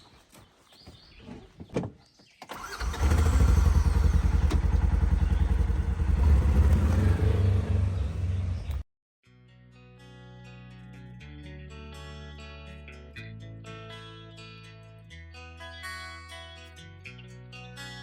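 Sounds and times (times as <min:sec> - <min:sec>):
vehicle engine rumbling: 0:02.5 - 0:08.8.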